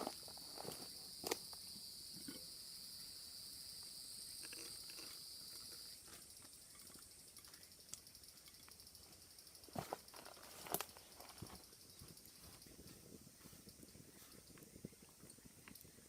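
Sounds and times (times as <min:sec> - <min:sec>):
insects droning: 0:00.0 - 0:16.0
pulsing insect trill: 0:00.0 - 0:16.0.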